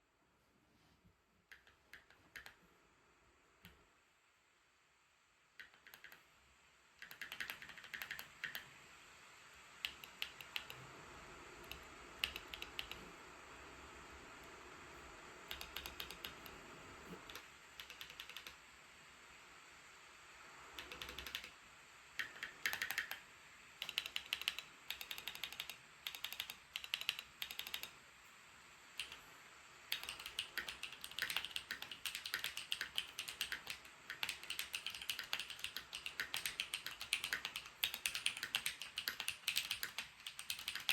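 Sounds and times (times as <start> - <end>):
laptop cooling fans hissing: 0.0 - 40.9
mechanical keyboard clacking: 1.5 - 2.6, 5.6 - 6.2, 7.0 - 8.7, 9.8 - 10.8, 11.6 - 13.1, 15.5 - 18.6, 20.8 - 21.6, 22.2 - 23.2, 23.8 - 28.0, 29.0 - 29.2, 29.9 - 40.9.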